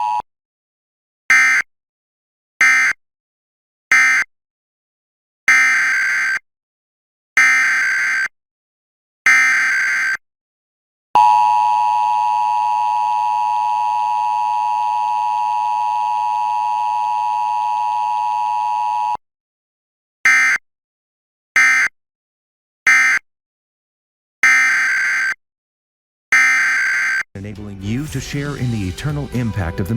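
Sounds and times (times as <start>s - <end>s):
two-tone attention signal: 11.2s - 19.2s.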